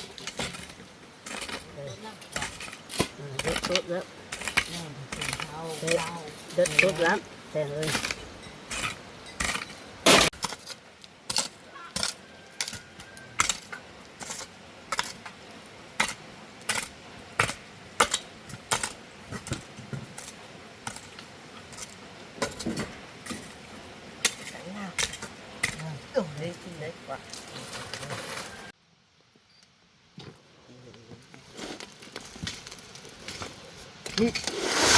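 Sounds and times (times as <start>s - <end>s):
metal tool striking soil: 0.0s - 15.4s.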